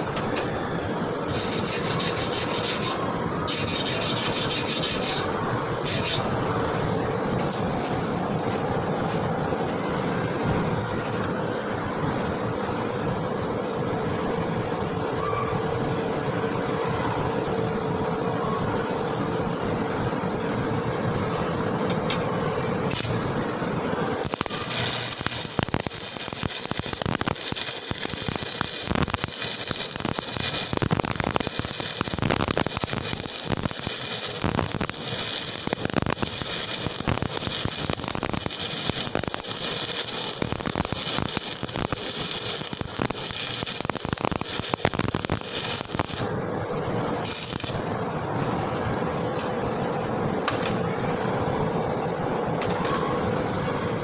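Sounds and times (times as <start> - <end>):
machine hum: 0.0 - 14.2, 20.5 - 54.0
welding arc crackling: 1.3 - 6.3, 22.9 - 23.4, 24.2 - 47.9.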